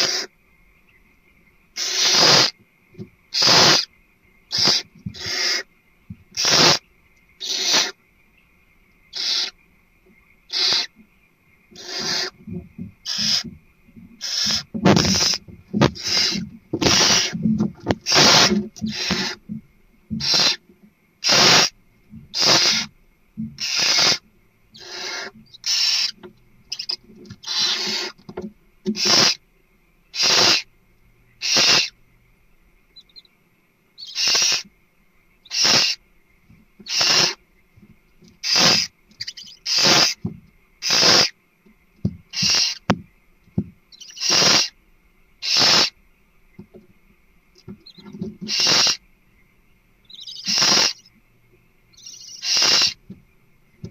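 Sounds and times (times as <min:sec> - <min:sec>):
barn owl hissing: 0:00.0 - 0:00.3, 0:01.8 - 0:02.6, 0:03.3 - 0:03.9, 0:04.5 - 0:05.7, 0:06.3 - 0:08.0, 0:09.1 - 0:09.6, 0:10.5 - 0:11.0, 0:11.8 - 0:12.4, 0:13.0 - 0:13.5, 0:14.2 - 0:19.5, 0:20.2 - 0:20.6, 0:21.2 - 0:22.9, 0:23.6 - 0:28.2, 0:28.9 - 0:29.4, 0:30.1 - 0:30.7, 0:31.4 - 0:32.0, 0:34.0 - 0:34.7, 0:35.4 - 0:36.0, 0:36.8 - 0:37.4, 0:38.4 - 0:40.2, 0:40.8 - 0:41.4, 0:42.3 - 0:42.9, 0:43.9 - 0:44.8, 0:45.4 - 0:46.0, 0:47.8 - 0:49.0, 0:50.0 - 0:51.1, 0:51.9 - 0:53.0.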